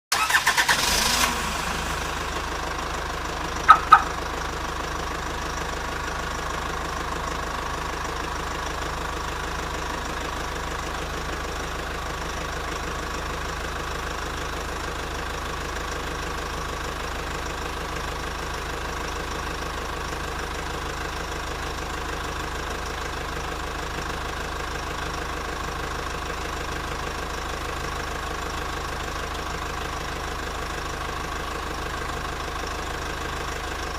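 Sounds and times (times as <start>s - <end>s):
car engine idling: 0.1s - 33.9s
short sharp sounds: 3.7s - 4.2s.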